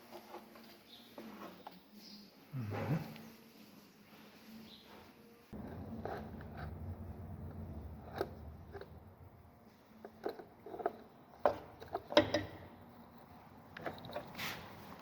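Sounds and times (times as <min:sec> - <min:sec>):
low rumble: 0:05.6 - 0:10.2.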